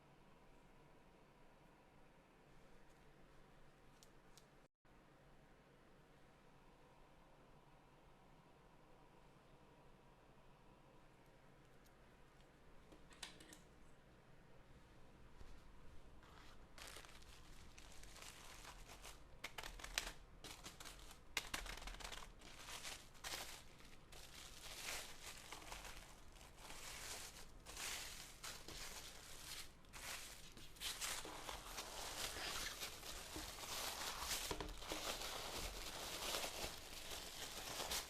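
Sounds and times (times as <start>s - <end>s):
packaging wrap crinkling and tearing: 16.3s - 38.0s.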